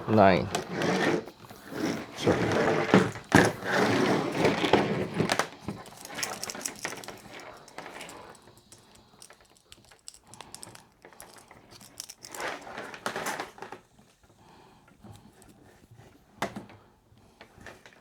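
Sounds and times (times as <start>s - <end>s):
small parts clicking and rattling: 2.9s - 13.6s.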